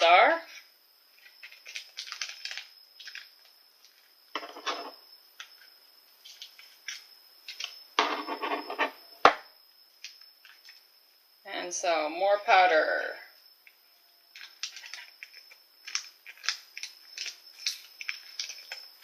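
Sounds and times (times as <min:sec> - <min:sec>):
packet rustling and scraping: 0:01.2 - 0:04.6, 0:14.3 - 0:18.9.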